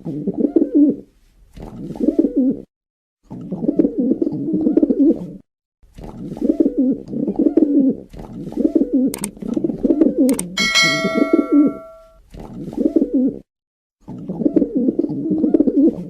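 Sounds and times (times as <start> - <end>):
bell-like ding: 10.6 - 12.2.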